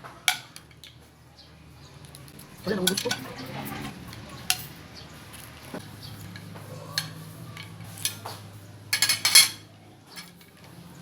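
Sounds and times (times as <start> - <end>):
cutlery scraping dishes: 2.7 - 4.8, 6.2 - 10.7
cutlery and dishes clinking: 2.7 - 5.5, 6.2 - 10.8.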